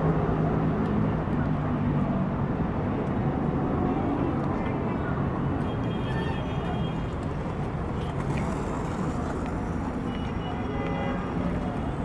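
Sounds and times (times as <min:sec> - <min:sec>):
traffic rumble: 0:06.6 - 0:12.0.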